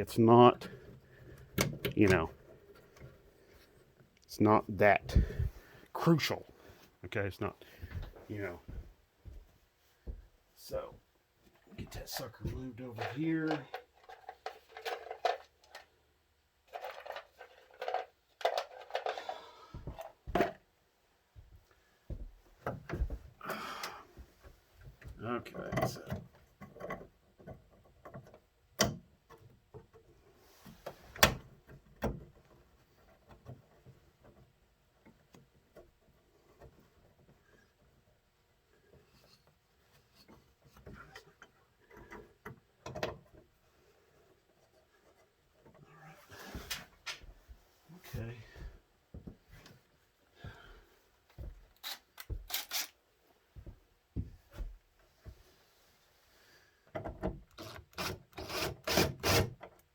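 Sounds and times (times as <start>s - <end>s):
tools clicking and knocking on metal: 1.5s - 2.2s, 12.2s - 15.9s.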